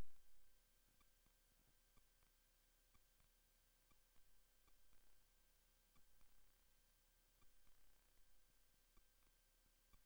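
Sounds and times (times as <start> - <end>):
faint steady hum: 0.0 - 1.1.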